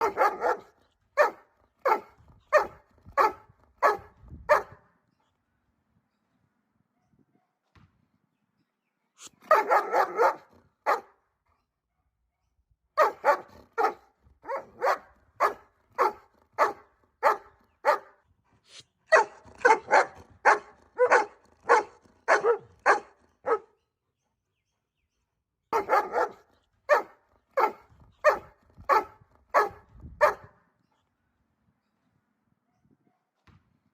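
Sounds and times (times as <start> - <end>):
dog barking: 0.0 - 4.8, 9.4 - 11.2, 13.0 - 18.2, 19.1 - 23.8, 25.7 - 30.6.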